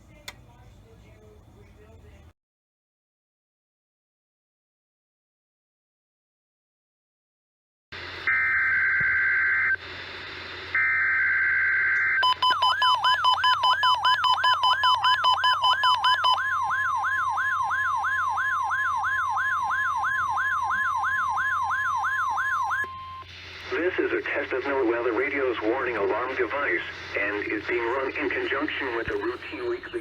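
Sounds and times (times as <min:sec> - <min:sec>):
warbling warning alarm tone: 0:10.8 - 0:23.3
radio static: 0:22.8 - 0:30.0.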